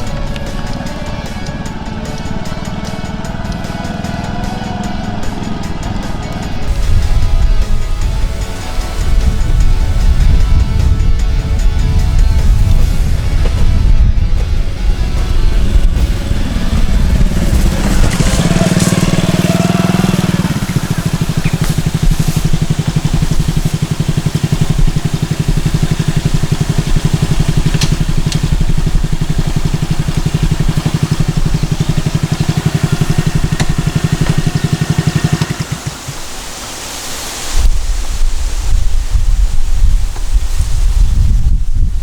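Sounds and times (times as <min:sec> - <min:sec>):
motorcycle engine idling: 0:00.0 - 0:36.5.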